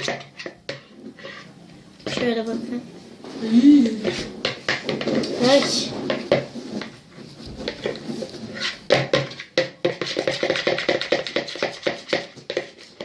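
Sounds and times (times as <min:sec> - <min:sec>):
spoon stirring glue in a bowl: 0:07.7 - 0:13.0.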